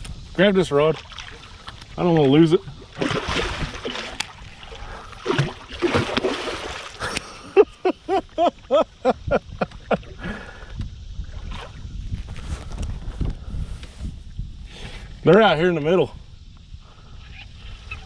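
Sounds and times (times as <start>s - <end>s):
water splashing: 0.8s - 7.4s.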